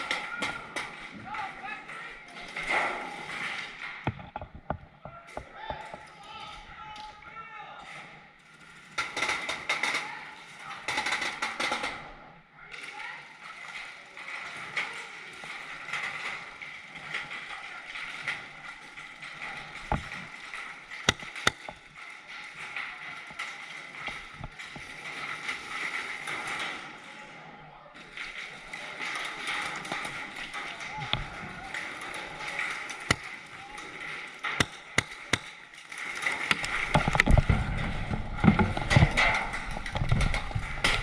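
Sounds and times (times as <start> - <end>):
sharp paintball cracks: 8.8 - 10.2, 10.9 - 12.2, 18.0 - 27.0, 28.4 - 41.0.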